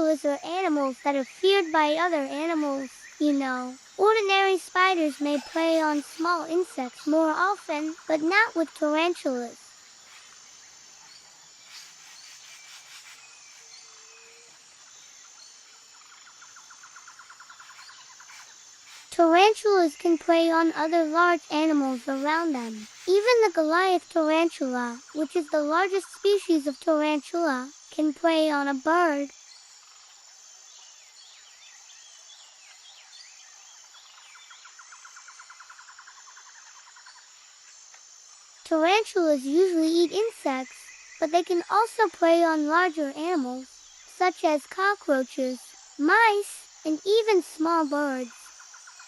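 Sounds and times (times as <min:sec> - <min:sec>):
birds calling with whistled notes: 0:00.0 - 0:23.6, 0:29.2 - 0:37.3
high insect drone: 0:00.0 - 0:49.0
bird chirps: 0:10.0 - 0:19.1.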